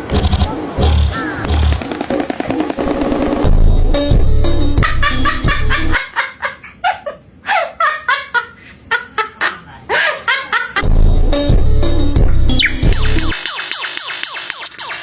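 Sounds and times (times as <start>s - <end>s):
music with heavy beat: 0.0s - 6.0s, 10.8s - 15.0s.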